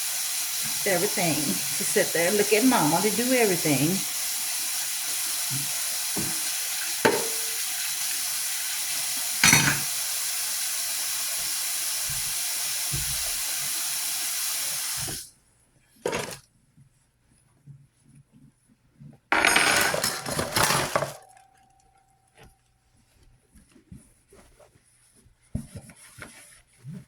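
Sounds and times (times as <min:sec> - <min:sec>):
tap running into sink: 0:00.5 - 0:10.1, 0:12.0 - 0:13.7
dishes clinking: 0:06.2 - 0:07.8, 0:09.4 - 0:10.0, 0:19.4 - 0:21.8.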